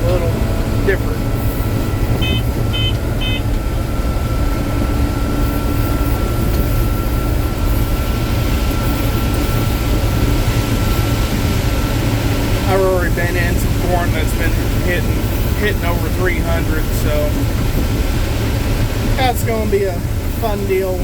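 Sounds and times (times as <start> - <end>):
combine harvester running: 0.0 - 21.0
short electronic beeps: 2.2 - 3.5.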